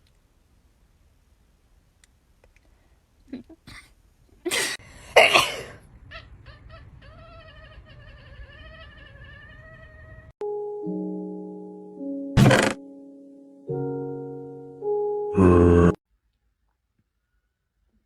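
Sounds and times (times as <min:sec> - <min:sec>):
cat crying: 0:06.1 - 0:10.3.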